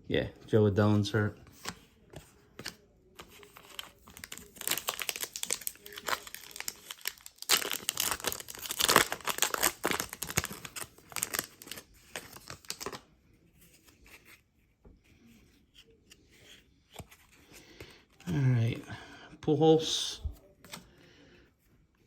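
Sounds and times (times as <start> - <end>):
foil wrapper tearing and crinkling: 3.5 - 13.0.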